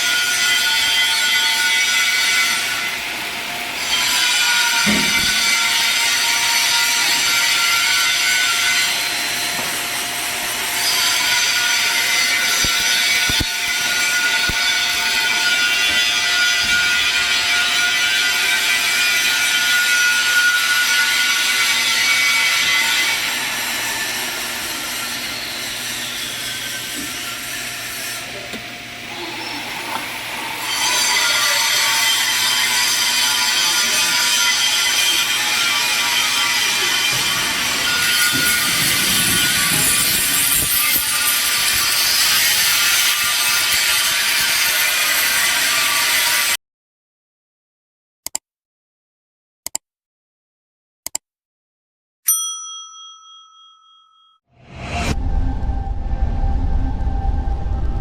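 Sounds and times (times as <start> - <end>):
arc welding sizzle: 1.8 - 15.9, 29.1 - 46.6.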